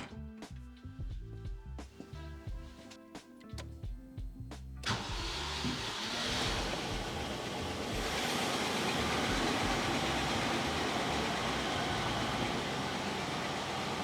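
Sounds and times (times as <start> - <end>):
background music: 0.0 - 13.9
car engine idling: 4.8 - 14.0.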